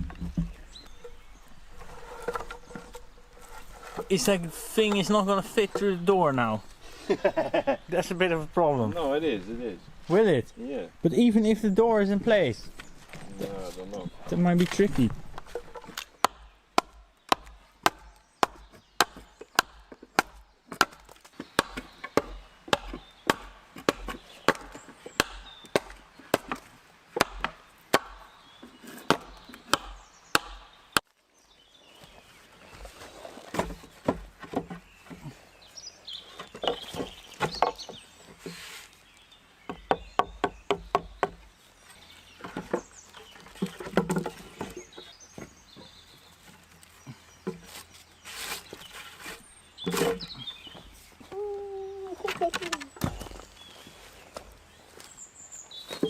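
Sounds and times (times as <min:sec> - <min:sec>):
wood chopping strikes: 0:14.6 - 0:31.1.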